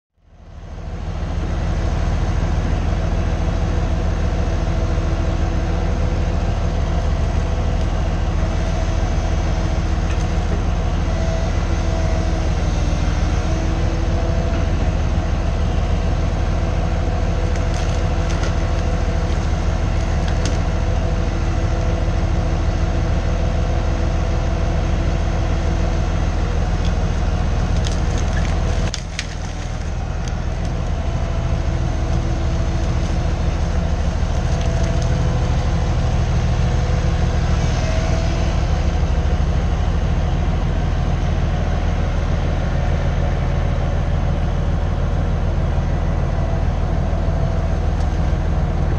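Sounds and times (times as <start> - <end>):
diesel engine running under load: 0.2 - 48.9
wood cracking and splintering: 17.2 - 21.9, 25.7 - 36.7.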